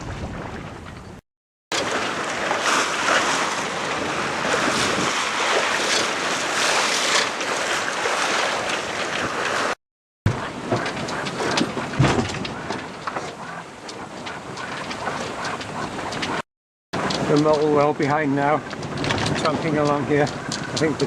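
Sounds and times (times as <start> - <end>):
wind buffeting microphone: 0.0 - 1.2, 3.0 - 6.7, 17.0 - 21.0
water splashing along hull: 0.0 - 16.4, 17.0 - 21.0.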